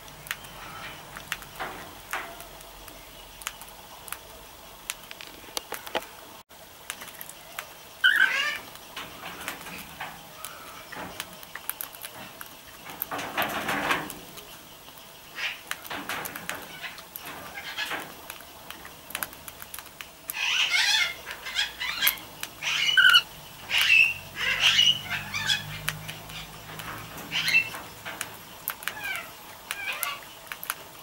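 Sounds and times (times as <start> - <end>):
cockatiels squawking and chirping: 8.0 - 8.7, 15.3 - 18.1, 20.3 - 28.2, 28.8 - 30.3.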